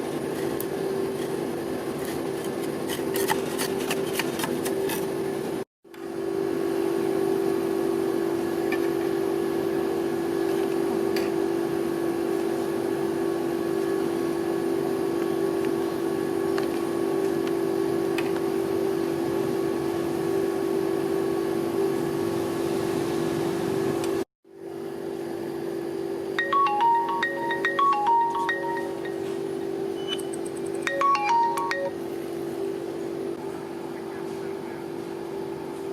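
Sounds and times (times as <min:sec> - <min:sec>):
electrical hum of cold-plate machine: 0:00.0 - 0:35.9
chime-like tune of bell notes: 0:26.4 - 0:32.0.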